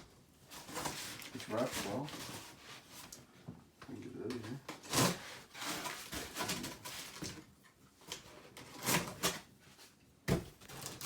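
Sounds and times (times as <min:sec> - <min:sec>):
cardboard rustling and scraping: 0:00.4 - 0:03.1, 0:04.4 - 0:07.5, 0:08.1 - 0:11.0.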